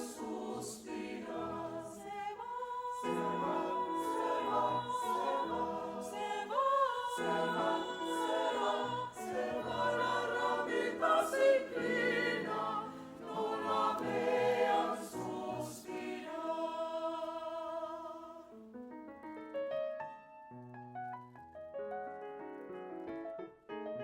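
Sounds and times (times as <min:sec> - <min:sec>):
choir singing: 0:00.0 - 0:18.6
piano notes: 0:18.6 - 0:24.0.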